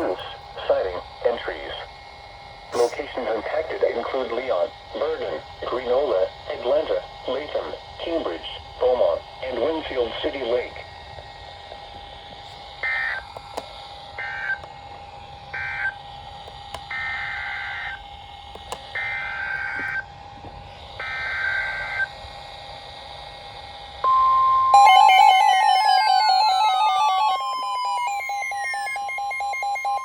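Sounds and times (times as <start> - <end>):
faint steady whine: 0.0 - 30.0
warbling alarm with falling sweeps: 24.0 - 30.0
steady alert tone: 24.1 - 30.0
warbling digital header tones: 24.1 - 30.0.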